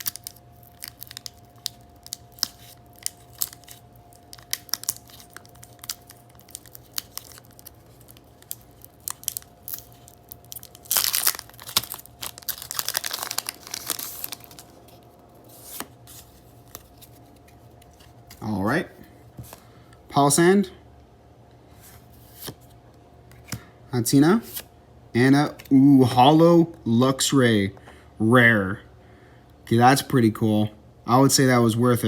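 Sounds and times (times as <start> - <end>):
wrapper ripping open: 0.0 - 15.0
wrapper crinkling: 0.0 - 18.1.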